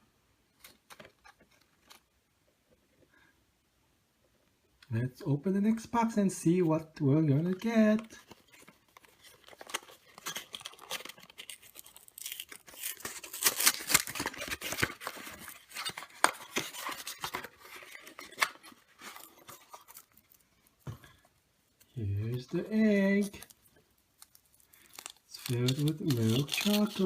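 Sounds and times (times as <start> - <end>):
cardboard packaging rustling and tearing: 7.5 - 27.0.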